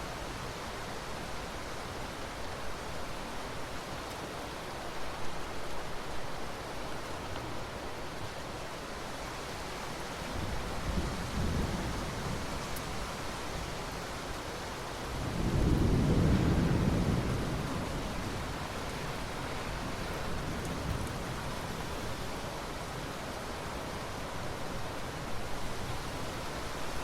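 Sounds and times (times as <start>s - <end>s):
steady rain: 0.0s - 27.0s
rolling thunder: 15.2s - 18.6s.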